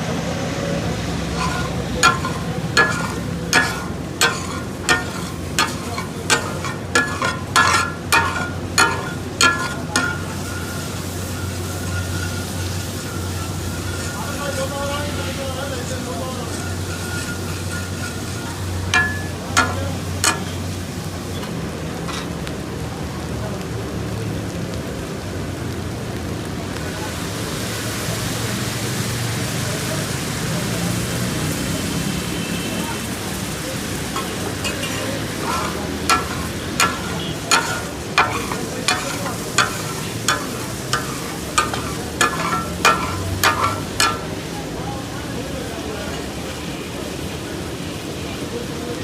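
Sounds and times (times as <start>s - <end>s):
food sizzling on a griddle: 0.2s - 49.0s
metal spatula clanks: 1.3s - 14.7s, 16.5s - 22.4s, 34.1s - 44.5s.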